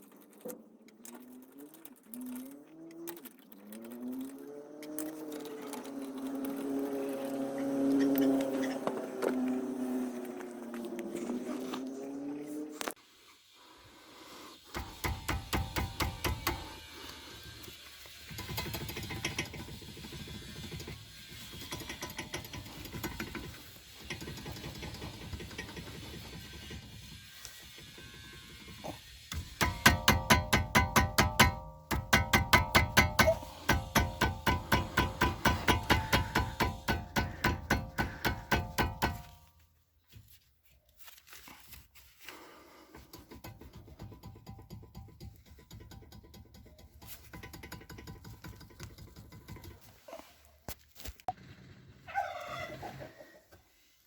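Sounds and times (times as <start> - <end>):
rapid mechanical clicking: 14.7 - 17.2, 18.3 - 27.2, 29.3 - 39.3.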